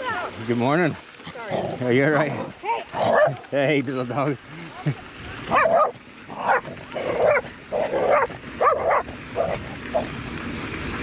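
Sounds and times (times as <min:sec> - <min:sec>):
small dog barking: 0:05.5 - 0:09.6.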